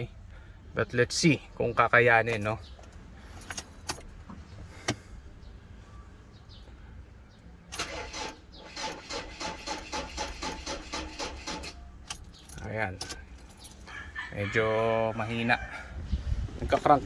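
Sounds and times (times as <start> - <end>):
starter motor cranking engine: 7.8 - 11.8.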